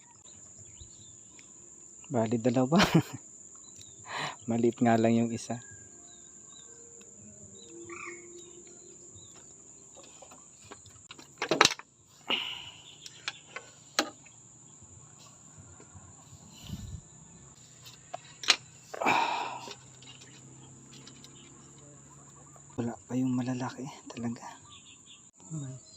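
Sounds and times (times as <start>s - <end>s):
crickets trilling: 0.0s - 25.9s.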